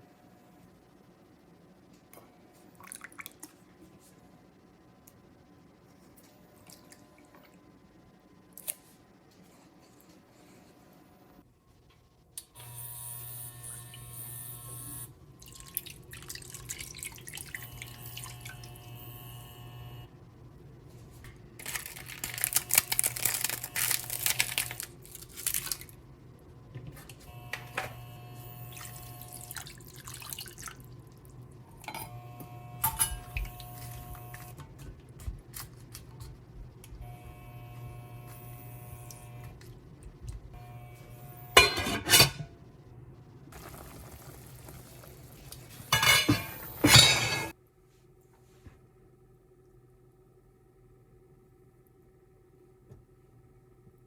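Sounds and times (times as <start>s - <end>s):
water running from a tap: 15.5s - 18.8s.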